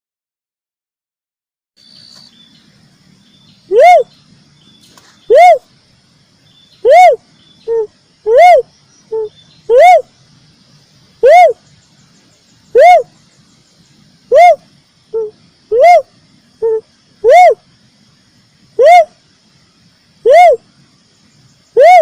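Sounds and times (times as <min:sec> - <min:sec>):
dove cooing: 0:03.7 - 0:04.1, 0:05.3 - 0:05.7, 0:06.8 - 0:10.1, 0:11.2 - 0:11.6, 0:12.7 - 0:13.1, 0:14.3 - 0:17.6, 0:18.8 - 0:19.2, 0:20.2 - 0:20.6, 0:21.8 - 0:22.0.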